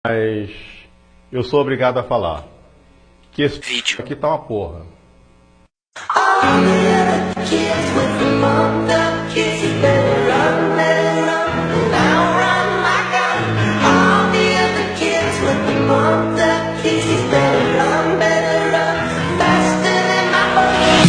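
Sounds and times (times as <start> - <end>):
voices singing together: 6.0 - 21.0.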